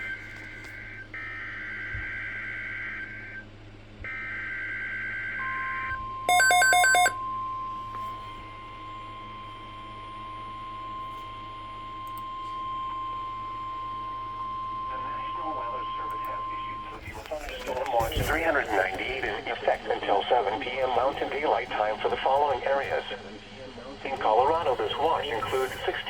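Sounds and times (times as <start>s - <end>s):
rapid loud beeps: 6.3s - 7.2s
shrill warning alarm tone: 6.3s - 7.2s.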